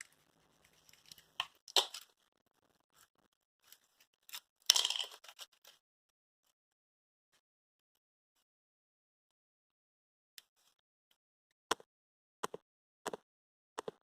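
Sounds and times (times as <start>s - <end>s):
small objects clicking and scraping: 0.0s - 5.8s.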